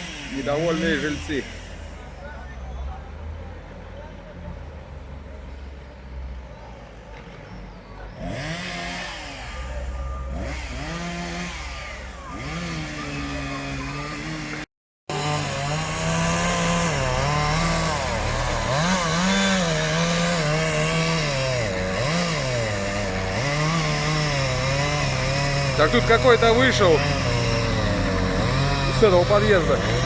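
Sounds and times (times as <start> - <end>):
chainsaw engine revving: 0.0 - 2.2, 8.2 - 30.0.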